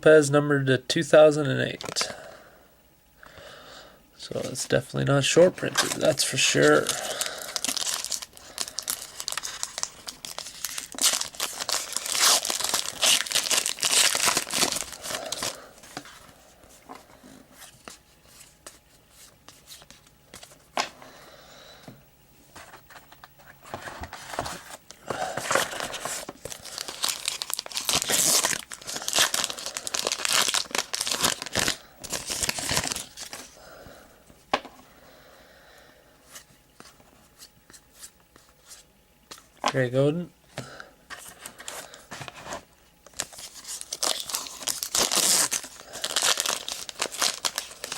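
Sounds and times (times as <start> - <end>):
wrapper tearing and crinkling: 5.6 - 16.1, 25.2 - 33.6, 43.0 - 47.9.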